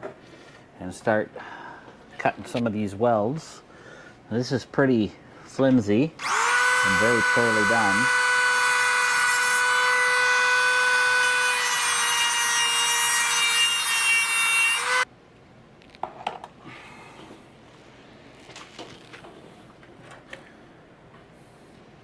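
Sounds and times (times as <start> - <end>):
cutoff wheel grinding steel: 6.2 - 15.0.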